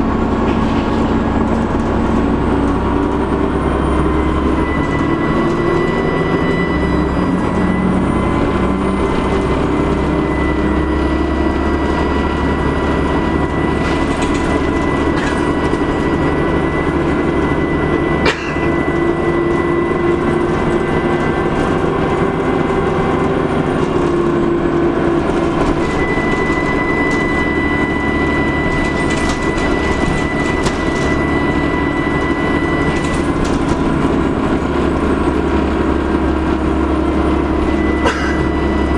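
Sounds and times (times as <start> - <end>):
diesel bus engine: 0.0 - 38.9
turbocharger whistle: 3.8 - 15.0, 37.4 - 38.9.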